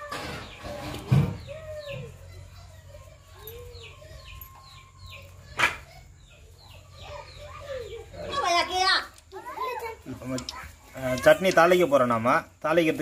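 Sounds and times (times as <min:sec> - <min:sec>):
birds chirping: 0:00.0 - 0:13.0.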